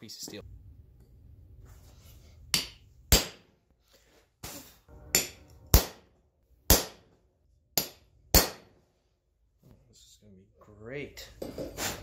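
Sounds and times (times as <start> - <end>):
hammer striking metal punch: 2.5 - 3.5, 5.0 - 6.1, 6.7 - 8.8.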